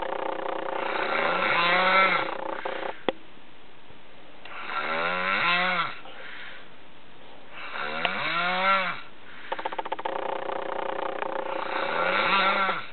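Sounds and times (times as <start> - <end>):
long snores: 0.0 - 3.0, 4.5 - 6.0, 7.6 - 9.7, 11.3 - 12.9
buzzing fluttering snore: 0.0 - 3.1, 7.6 - 12.9.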